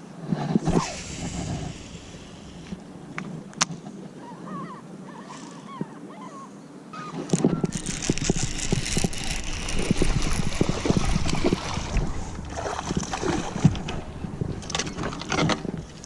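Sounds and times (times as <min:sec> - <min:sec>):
wind rushing over microphone: 0:07.3 - 0:16.0
low rumble: 0:08.0 - 0:16.0
knocks and thumps on boat: 0:09.9 - 0:16.0.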